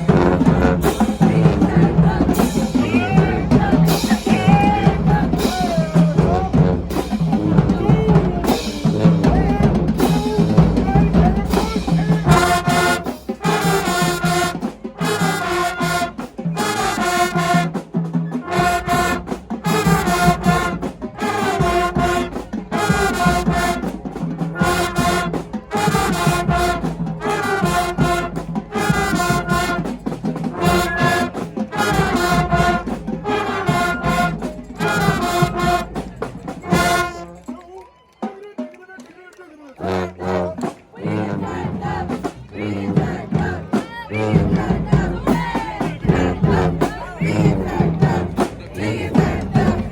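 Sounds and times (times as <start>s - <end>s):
marching band playing: 0.0s - 49.9s.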